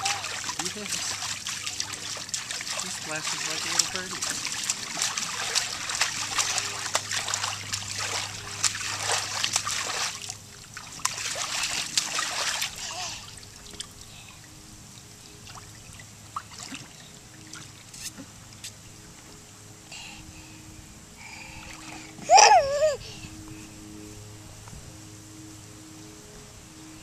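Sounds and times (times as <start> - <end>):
child splashing water: 0.0 - 14.5, 21.2 - 23.7
water dripping: 0.0 - 18.8.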